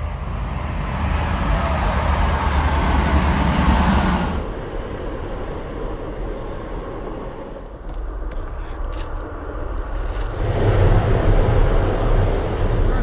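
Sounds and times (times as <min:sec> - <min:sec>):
train passing with rumble: 0:00.0 - 0:04.8.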